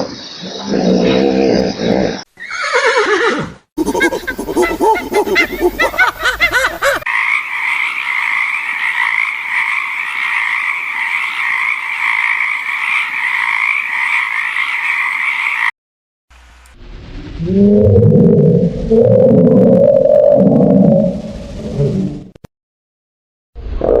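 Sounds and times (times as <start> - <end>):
horse whinny: 2.4 - 3.6
frogs trilling chorus: 4.8 - 15.7
low rising animal call: 16.8 - 22.4.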